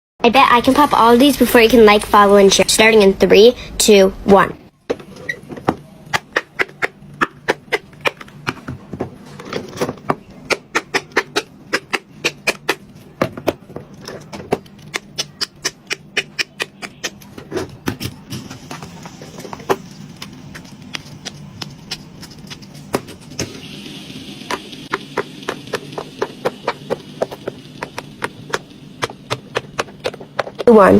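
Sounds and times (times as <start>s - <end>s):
fidget toy bubbles popping: 10.4s - 13.6s, 14.5s - 17.3s, 24.5s - 30.7s.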